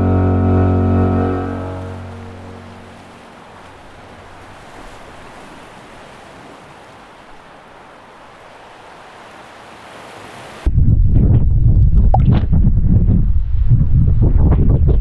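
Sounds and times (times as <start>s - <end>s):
rushing water: 0.0s - 10.7s.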